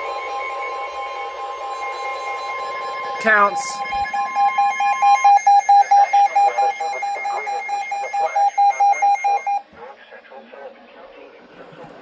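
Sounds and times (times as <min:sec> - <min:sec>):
steady high electronic tone: 0:00.0 - 0:09.6
rapid high electronic beeps: 0:01.2 - 0:09.6.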